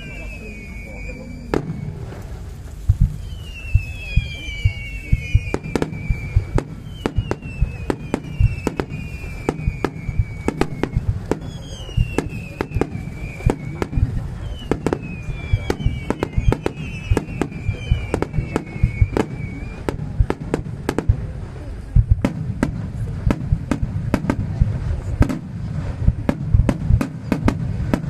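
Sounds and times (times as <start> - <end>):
fireworks bangs: 0.0 - 28.0
fireworks whistles: 0.0 - 28.0
low rumble: 20.1 - 27.0.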